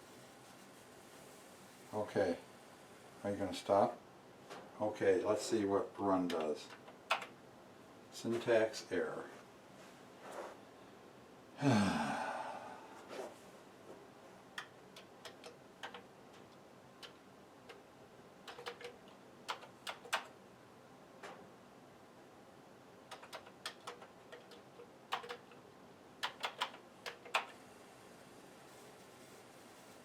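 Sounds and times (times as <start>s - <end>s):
computer keyboard typing: 6.3s - 7.3s, 14.6s - 17.8s, 18.4s - 20.4s, 23.1s - 25.6s, 26.2s - 27.6s.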